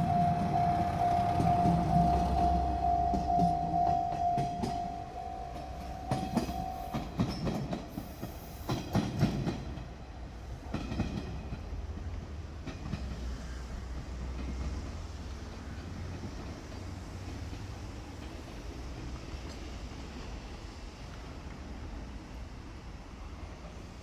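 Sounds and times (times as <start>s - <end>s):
low engine rumble: 0.0s - 7.2s
steady high tone: 0.0s - 7.8s
railcar wheels clicking over rail joints: 0.0s - 20.1s.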